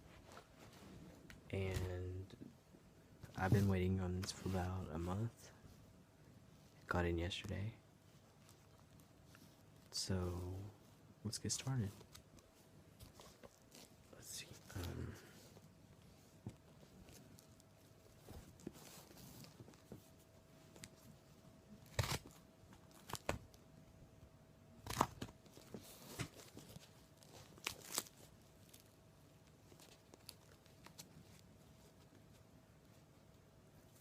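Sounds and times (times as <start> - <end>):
package wrapping tearing and crinkling: 21.8 - 23.5, 24.8 - 25.3, 26.0 - 29.0.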